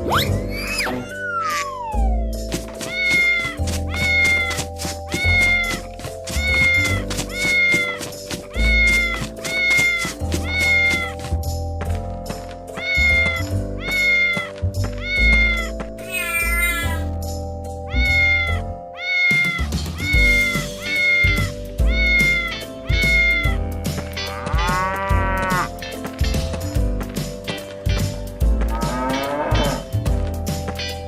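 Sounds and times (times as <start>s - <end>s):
background music: 0.0s - 31.0s
cat meowing: 2.8s - 4.5s, 12.8s - 14.4s, 17.9s - 23.6s.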